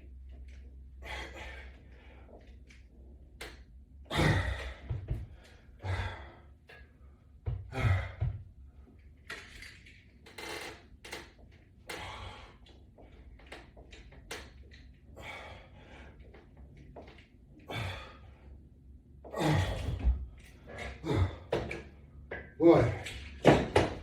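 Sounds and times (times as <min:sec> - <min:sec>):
man breathing hard: 0:01.0 - 0:02.5, 0:04.1 - 0:06.6, 0:07.6 - 0:08.4, 0:11.9 - 0:13.2, 0:15.1 - 0:16.3, 0:17.6 - 0:18.6, 0:20.8 - 0:21.7
thumps and rustles of bands: 0:04.6 - 0:05.6, 0:07.4 - 0:08.6, 0:19.2 - 0:24.0.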